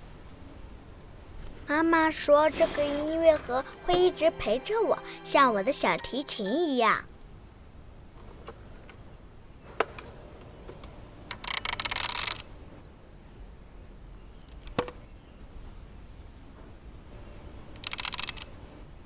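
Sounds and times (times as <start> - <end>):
music box winding clicks: 11.3 - 12.5, 17.8 - 18.5.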